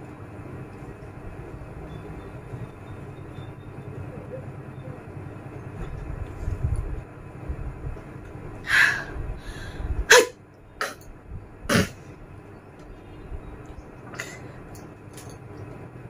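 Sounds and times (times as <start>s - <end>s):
woman forcing sneezes: 10.1s - 11.0s.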